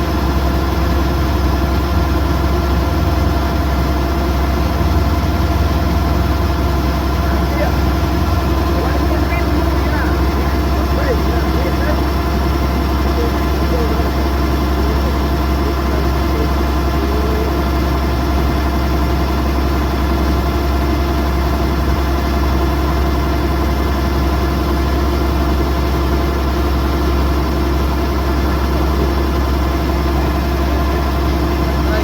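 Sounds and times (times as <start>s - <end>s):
combine harvester engine droning: 0.0s - 32.0s
machinery whining tones: 1.2s - 20.5s.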